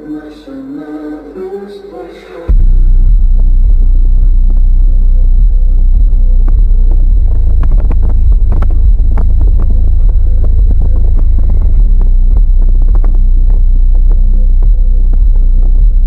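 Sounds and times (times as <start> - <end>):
subwoofer playing deep bass: 2.4 - 16.0
crackles and clicks: 3.2 - 16.0.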